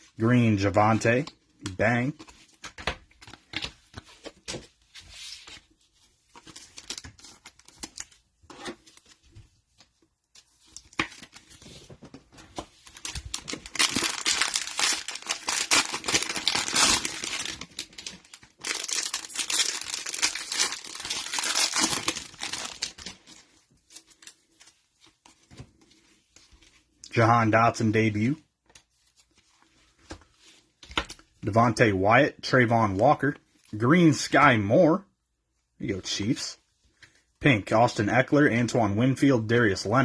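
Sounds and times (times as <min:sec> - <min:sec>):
cellophane wrappers crinkling: 0:12.7 - 0:25.4.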